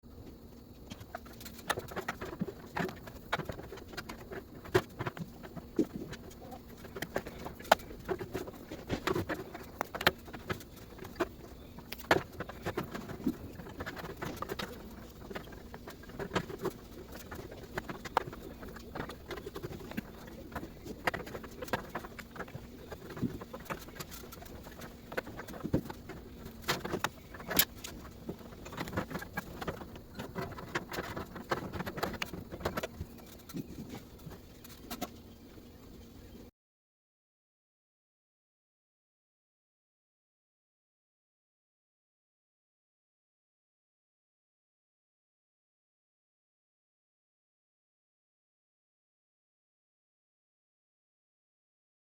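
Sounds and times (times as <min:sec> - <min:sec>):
steady low hum: 0:00.0 - 0:36.5.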